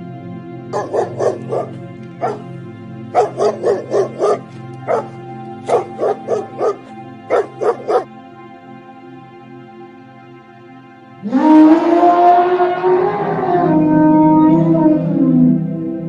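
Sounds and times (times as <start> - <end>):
background music: 0.0 - 16.0
dog barking: 0.7 - 2.5, 3.1 - 8.1.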